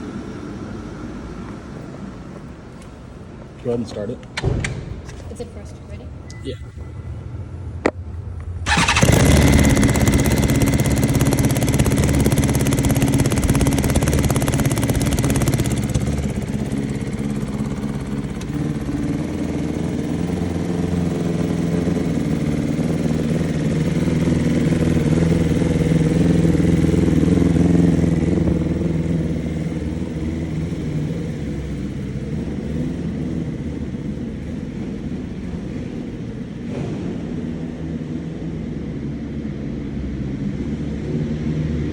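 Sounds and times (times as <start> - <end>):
motorcycle engine starting and idling: 7.9 - 41.2.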